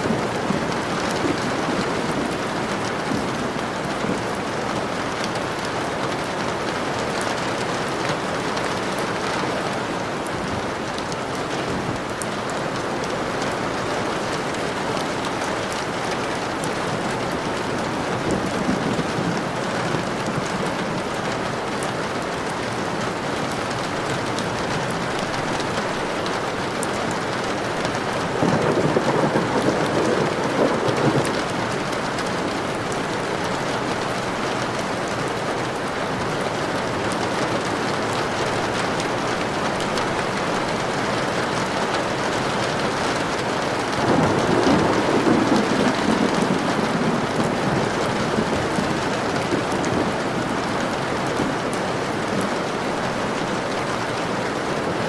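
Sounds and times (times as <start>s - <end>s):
steady rain: 0.0s - 55.0s
thunder rolling: 28.3s - 32.0s, 41.6s - 52.5s.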